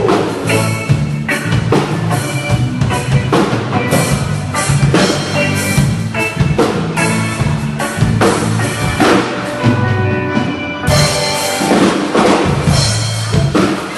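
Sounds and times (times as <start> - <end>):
band music: 0.0 - 13.9
bass line: 0.0 - 13.9
drum kit beat: 0.0 - 13.9.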